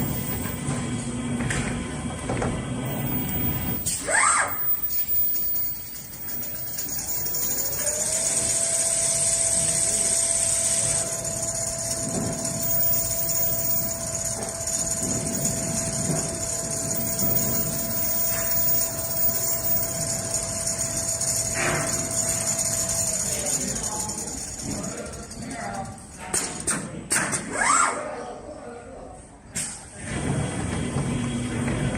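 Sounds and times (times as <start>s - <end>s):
machine motor whining: 2.7s - 26.6s
low clatter: 4.6s - 27.3s.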